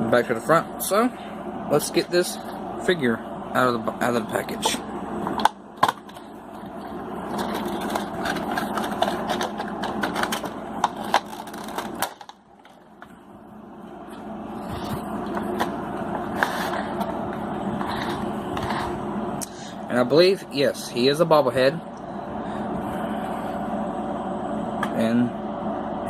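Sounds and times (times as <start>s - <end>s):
packaging scraping and rustling: 5.9s - 13.1s, 14.6s - 19.0s.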